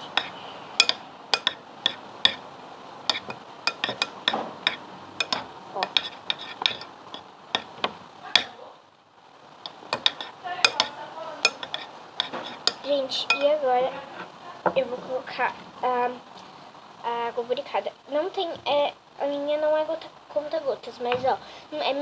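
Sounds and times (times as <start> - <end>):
spoon stirring slime: 0.0 - 2.4, 3.0 - 8.5, 9.6 - 15.1
spoon tapping bowl: 0.1 - 2.4, 3.1 - 8.5, 9.6 - 13.6
soft squelching: 9.7 - 15.7.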